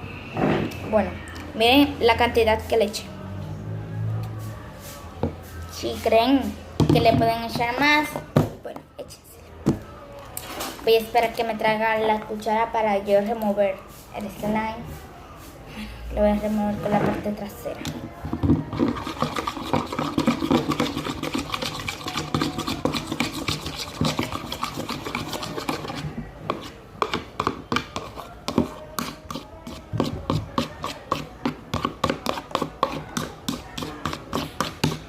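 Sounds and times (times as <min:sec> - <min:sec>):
spoon scraping a bowl: 0:17.9 - 0:35.0.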